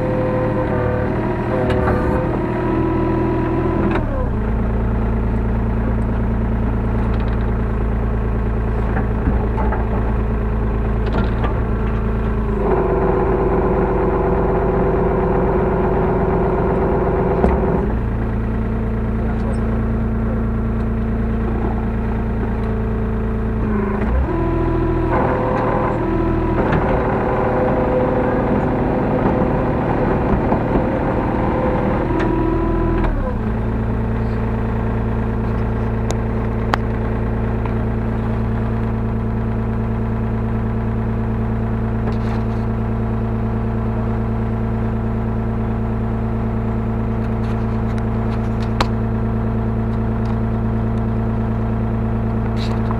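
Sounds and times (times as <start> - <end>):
excavator diesel engine running: 0.0 - 52.9.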